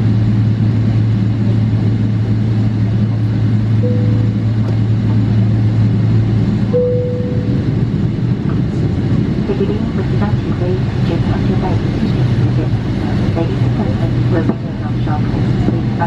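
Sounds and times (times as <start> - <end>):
aircraft cabin drone: 0.0 - 16.0
short faint tones: 3.8 - 4.7, 6.8 - 7.6.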